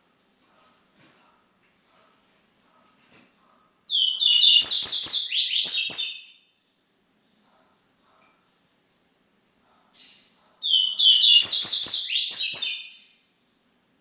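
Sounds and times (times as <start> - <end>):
bird singing fast high phrase: 3.9 - 6.3, 10.6 - 13.0.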